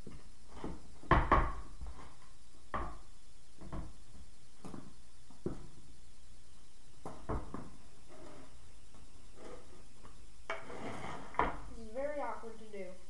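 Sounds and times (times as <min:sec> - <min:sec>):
skateboard and tools knocking: 0:07.0 - 0:11.7.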